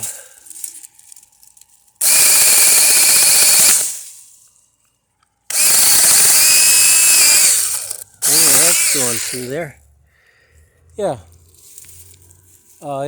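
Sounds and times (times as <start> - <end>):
chain rattling: 0.0 - 2.0
electric mini chainsaw whine: 2.0 - 4.1, 5.5 - 9.7.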